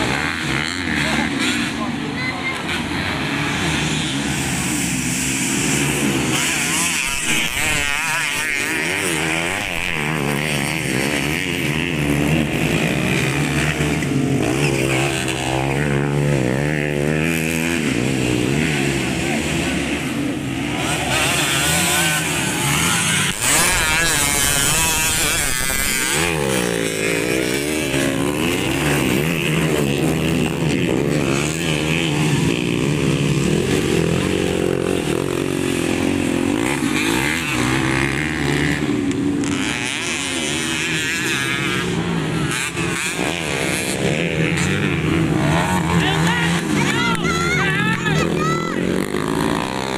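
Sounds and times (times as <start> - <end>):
motorcycles racing and revving: 0.0 - 49.9.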